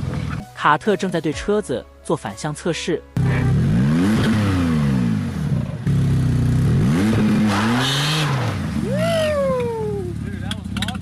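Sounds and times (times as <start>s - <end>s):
car engine revving: 3.2s - 11.0s.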